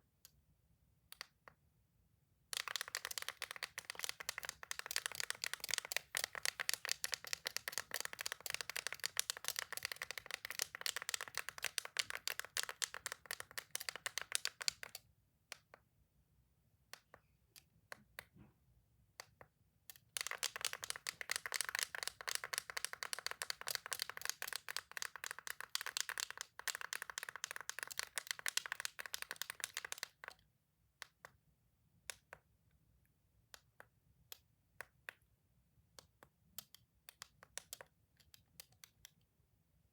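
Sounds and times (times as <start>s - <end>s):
toys clicking: 2.6s - 15.6s, 19.9s - 30.4s.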